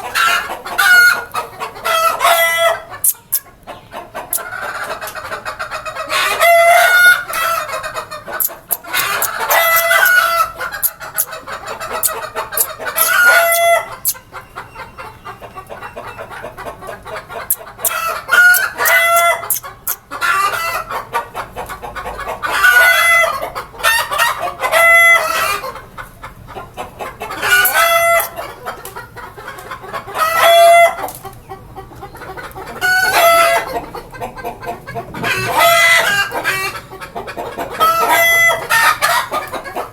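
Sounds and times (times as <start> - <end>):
chickens clucking: 0.0 - 39.9
rooster crowing: 8.9 - 10.8, 13.0 - 14.2.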